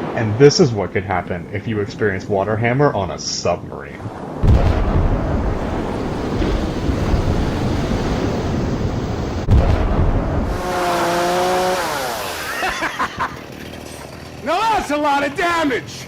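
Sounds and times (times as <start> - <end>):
rushing water roar: 0.0 - 16.0
heavy booms: 4.4 - 12.2.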